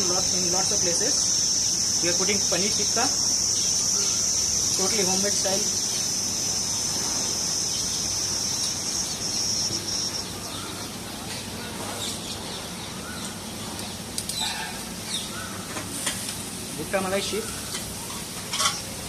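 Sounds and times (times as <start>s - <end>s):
cricket chirring: 0.0s - 10.9s.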